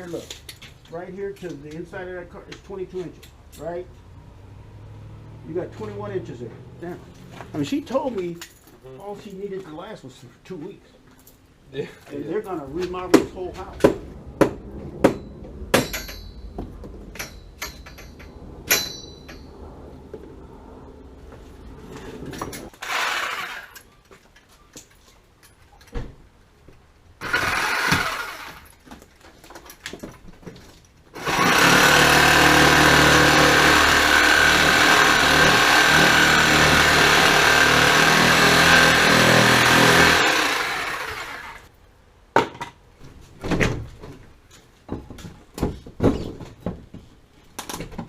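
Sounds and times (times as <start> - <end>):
knocks and clatter: 12.9 - 20.2
power tool running: 22.8 - 23.8, 27.2 - 28.6, 31.2 - 41.7.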